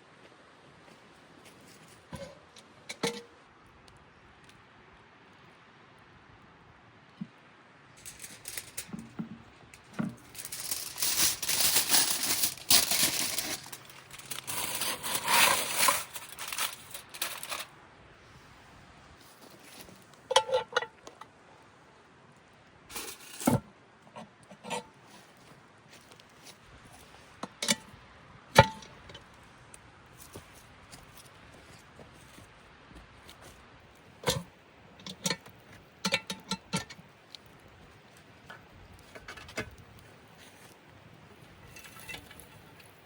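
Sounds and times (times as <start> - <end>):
crinkling and scraping: 0.9 - 3.3, 8.0 - 17.8, 19.2 - 21.3, 22.9 - 28.0, 28.6 - 43.0.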